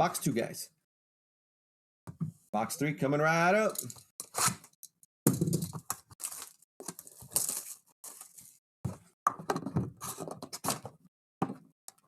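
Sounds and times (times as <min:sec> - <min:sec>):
shrink wrap tearing and crinkling: 0:06.1 - 0:08.6.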